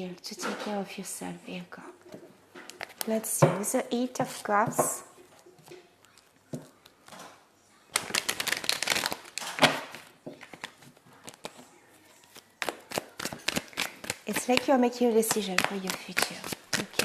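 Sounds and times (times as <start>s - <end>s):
cards being shuffled: 7.9s - 17.0s.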